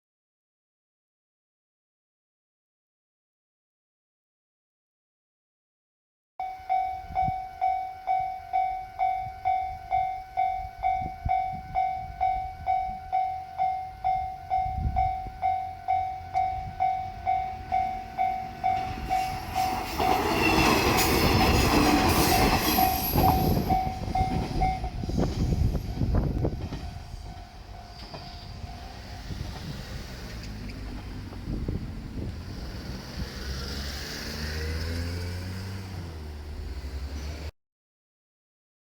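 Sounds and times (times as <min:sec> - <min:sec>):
level-crossing warning bell: 0:06.4 - 0:29.6
diesel train passing: 0:06.5 - 0:37.5.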